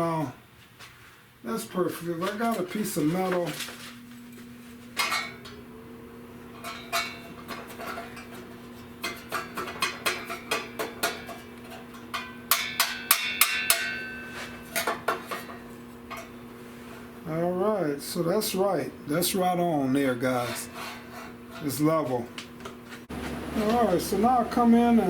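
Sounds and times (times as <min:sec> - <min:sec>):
steady low hum: 0:00.0 - 0:25.0
hammer striking sheet metal: 0:06.6 - 0:15.5.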